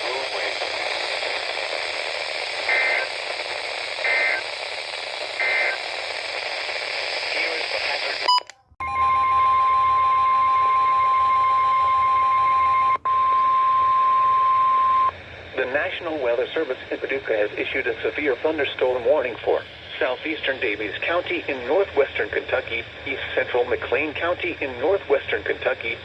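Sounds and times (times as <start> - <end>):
radio hiss: 0.0 - 8.3, 14.7 - 26.0
steady warning alarm tone: 8.8 - 15.1.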